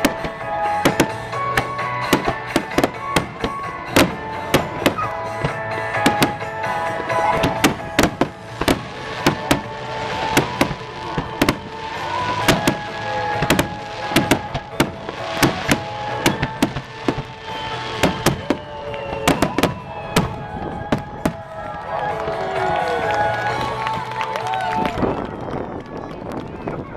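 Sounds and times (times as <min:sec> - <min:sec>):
music playing: 0:00.0 - 0:25.8
fireworks bangs and cracks: 0:00.0 - 0:26.7
fireworks whistles: 0:07.2 - 0:21.3.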